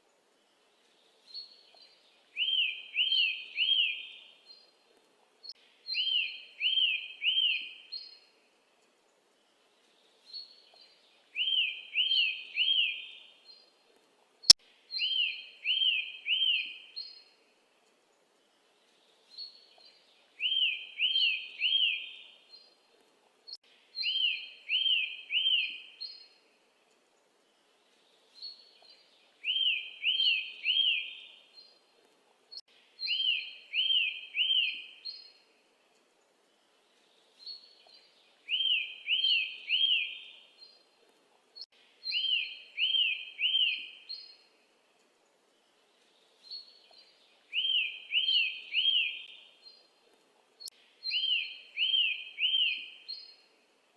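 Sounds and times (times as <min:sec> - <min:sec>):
songbird whistling and chirping: 0:01.3 - 0:04.6, 0:05.9 - 0:08.2, 0:10.3 - 0:13.6, 0:14.9 - 0:17.3, 0:19.3 - 0:22.7, 0:24.0 - 0:26.4, 0:28.3 - 0:31.7, 0:33.0 - 0:35.4, 0:37.4 - 0:40.8, 0:42.0 - 0:44.5, 0:46.2 - 0:49.9, 0:51.0 - 0:53.4.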